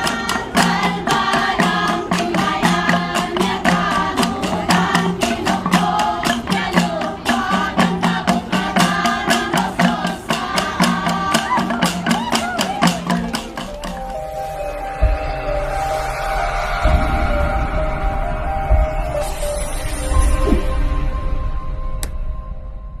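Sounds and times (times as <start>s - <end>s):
group singing: 0.0s - 13.6s.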